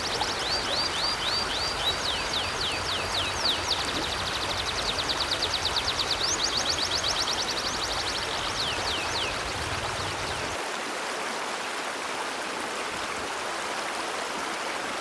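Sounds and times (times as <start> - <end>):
songbird singing: 0.0 - 10.6
flowing river water: 0.0 - 15.0.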